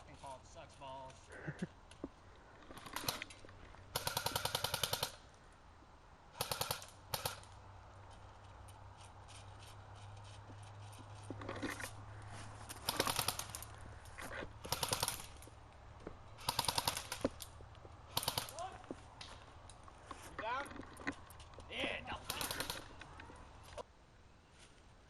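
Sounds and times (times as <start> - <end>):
airsoft guns firing bursts: 3.9 - 5.2, 6.4 - 7.5, 12.8 - 13.7, 14.6 - 15.4, 16.4 - 17.3, 18.1 - 18.7, 22.1 - 23.0.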